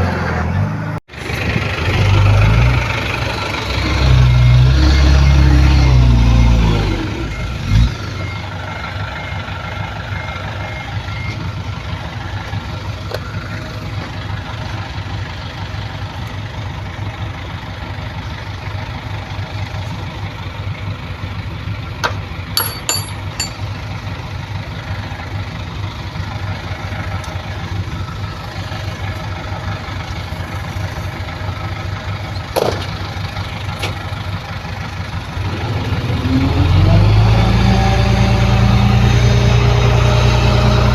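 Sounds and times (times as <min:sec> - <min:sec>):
diesel engine rumbling: 0:00.0 - 0:40.9
reversing alarm beeping: 0:04.6 - 0:11.6.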